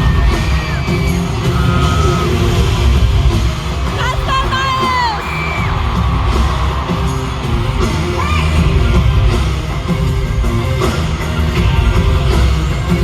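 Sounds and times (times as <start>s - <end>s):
bass-driven backing track: 0.0s - 13.0s
fans yelling: 3.8s - 8.8s.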